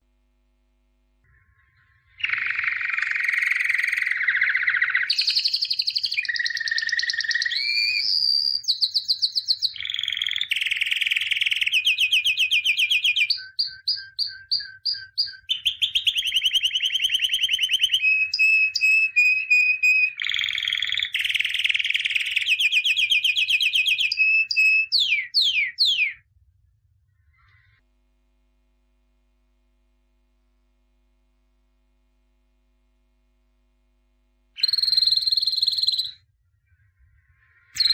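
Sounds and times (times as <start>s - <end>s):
songbird singing trills and whistles: 1.4s - 26.2s, 34.6s - 36.2s, 37.7s - 37.9s.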